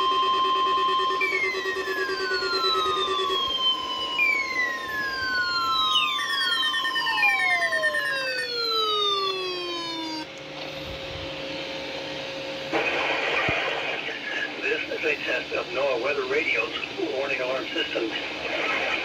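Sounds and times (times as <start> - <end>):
tones sliding down in pitch: 0.0 - 10.3
steady alarm tone: 0.0 - 12.6
radio static: 12.7 - 19.0
faint voice over static: 14.2 - 19.0.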